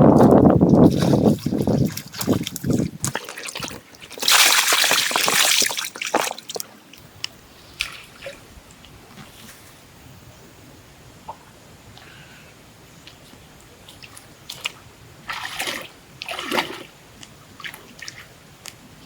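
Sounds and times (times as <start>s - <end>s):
water dripping: 0.2s - 6.7s
water splashing: 0.2s - 6.7s.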